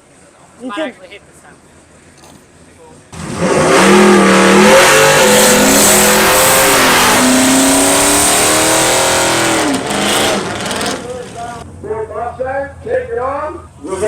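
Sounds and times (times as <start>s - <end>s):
drag racing car engine revving: 3.1s - 11.6s.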